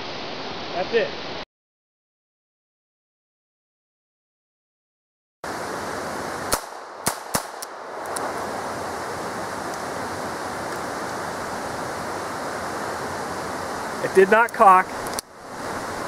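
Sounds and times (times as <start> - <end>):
wind noise hiss: 5.4 - 16.0
pistol shots: 6.5 - 7.8.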